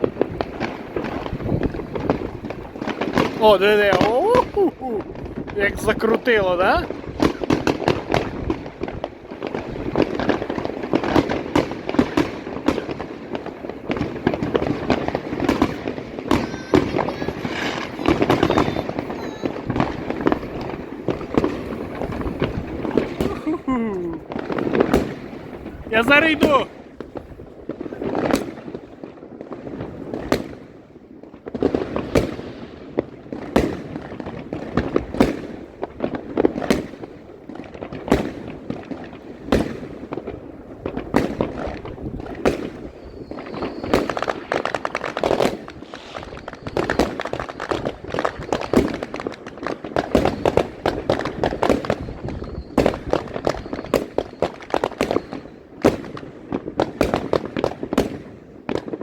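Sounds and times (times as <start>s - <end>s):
fireworks bangs: 0.0s - 59.0s
fireworks crackle and rumble: 0.0s - 59.0s
faint high whistle: 43.0s - 44.0s.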